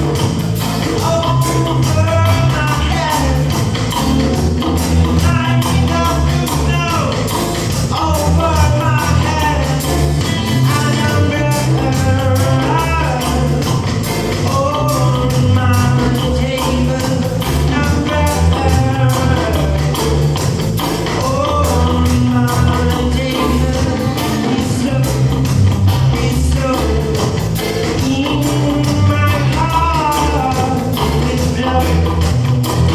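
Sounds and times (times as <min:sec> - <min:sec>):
gliding melodic lead line: 0:00.0 - 0:26.3
heavy bass line: 0:00.0 - 0:32.9.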